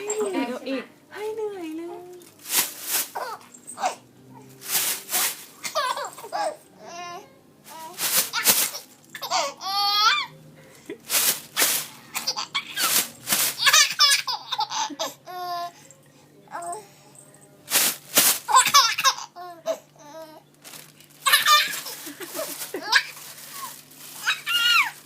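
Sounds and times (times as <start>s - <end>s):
plastic bag rustling: 1.7s - 6.6s, 7.7s - 9.4s, 10.9s - 14.9s, 17.7s - 19.1s, 20.5s - 25.0s
baby laughing and squealing: 5.6s - 6.6s, 12.2s - 13.0s, 13.6s - 15.6s, 18.5s - 19.8s, 21.2s - 25.0s.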